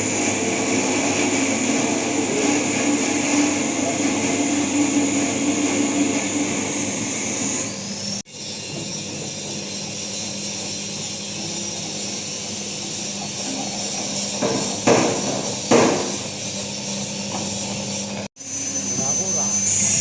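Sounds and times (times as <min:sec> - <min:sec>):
machine motor droning: 0:00.0 - 0:08.2.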